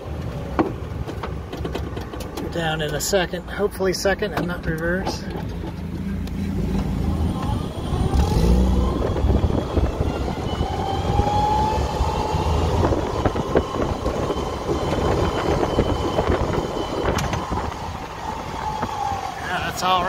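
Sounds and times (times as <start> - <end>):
engine pulling uphill: 0.0 - 20.0
clicks and rattles: 0.6 - 3.0
gear whine: 5.4 - 20.0.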